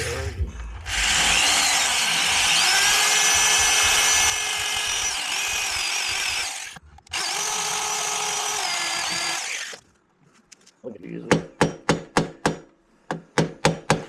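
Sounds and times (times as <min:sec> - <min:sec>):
power tool grinding metal: 0:00.9 - 0:09.8.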